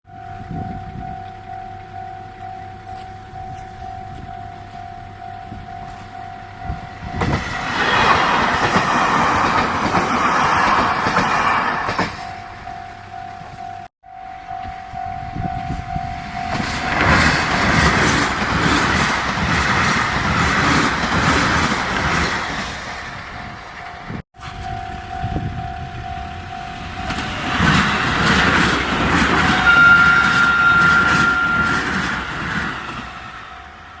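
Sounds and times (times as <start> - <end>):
level crossing bell ringing: 0.1 - 7.2, 12.2 - 17.9, 23.9 - 28.0, 29.3 - 32.6
train rumbling and wheels clattering: 0.1 - 34.0
train horn: 29.1 - 32.6.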